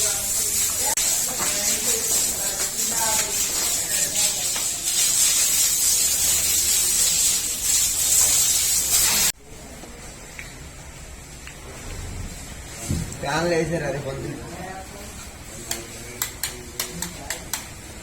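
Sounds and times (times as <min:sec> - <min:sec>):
loud spraying hiss: 0:00.0 - 0:09.4.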